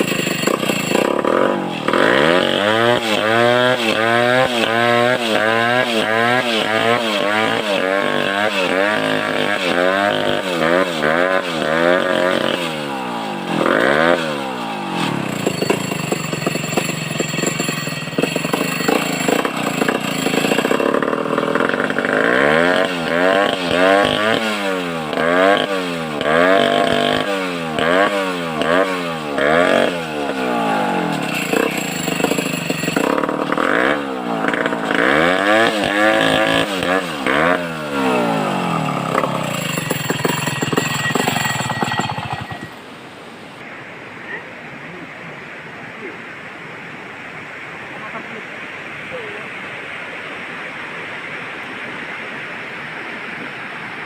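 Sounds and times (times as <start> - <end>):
chainsaw cutting timber: 0.0 - 42.9.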